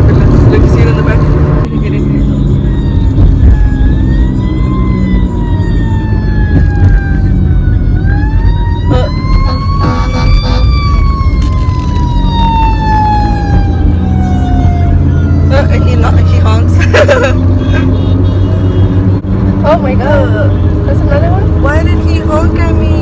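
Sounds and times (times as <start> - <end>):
car cabin and road rumble: 0.0 - 23.0
ambulance siren wailing: 1.6 - 19.1.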